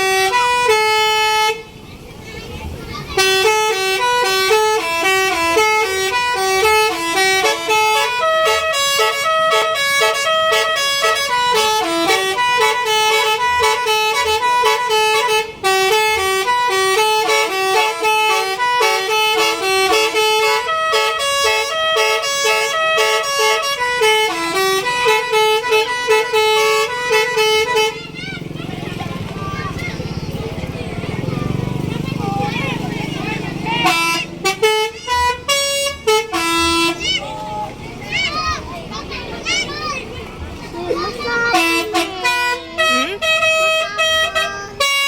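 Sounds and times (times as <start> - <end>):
musical air horn melody: 0.0 - 1.7, 3.2 - 28.4, 33.7 - 37.7, 41.2 - 45.0.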